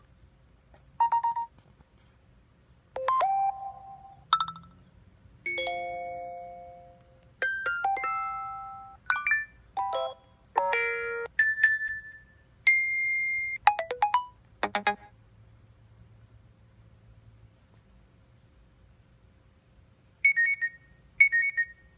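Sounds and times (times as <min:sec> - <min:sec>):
phone alert tones: 0:01.0 - 0:01.5, 0:03.0 - 0:04.8, 0:05.5 - 0:15.1.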